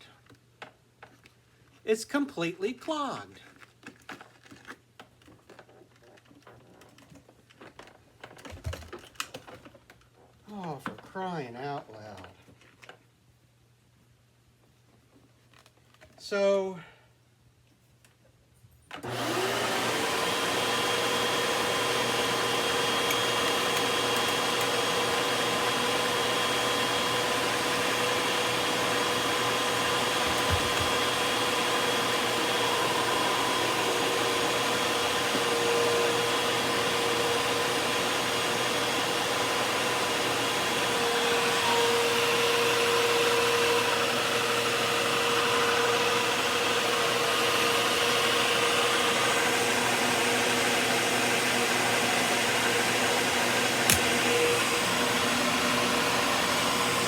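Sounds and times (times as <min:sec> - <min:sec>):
vacuum cleaner whining: 0:18.9 - 0:57.0.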